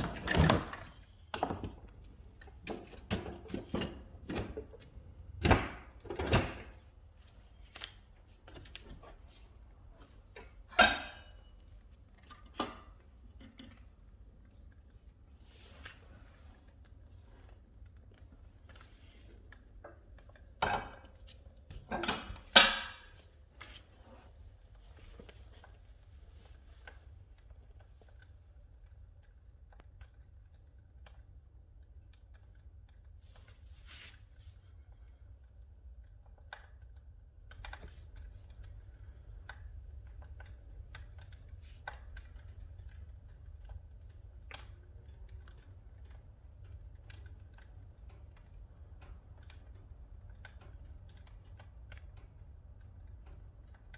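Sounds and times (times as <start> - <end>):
fire crackling and popping: 34.8 - 53.9.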